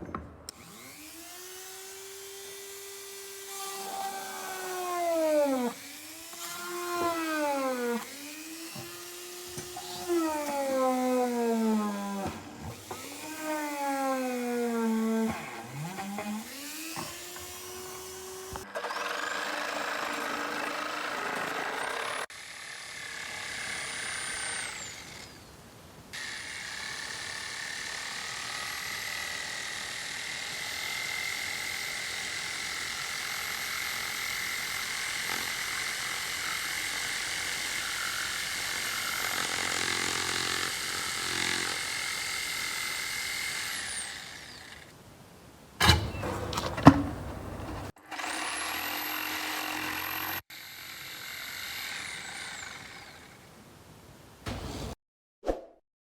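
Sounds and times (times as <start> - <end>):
power tool motor whine: 0.5 - 23.0.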